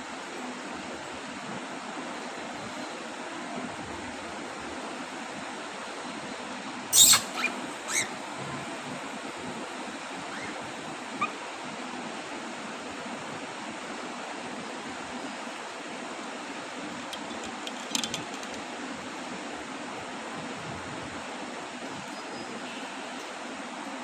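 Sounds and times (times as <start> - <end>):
short rising bird chirp: 7.0 - 8.1.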